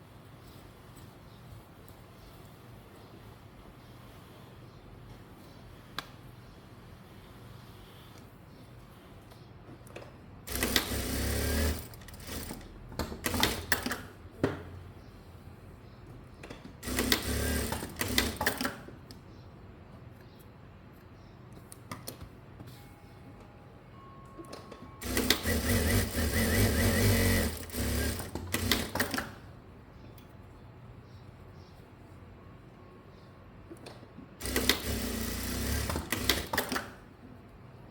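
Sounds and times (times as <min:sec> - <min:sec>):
sewing machine stitching: 0:10.5 - 0:14.1, 0:16.8 - 0:18.8, 0:25.0 - 0:29.4, 0:34.4 - 0:37.0.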